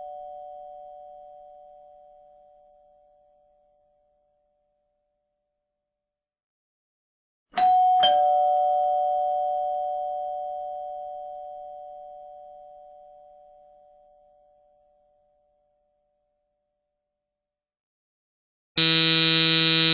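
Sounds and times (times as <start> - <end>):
two-tone doorbell chime: 7.6 - 11.1.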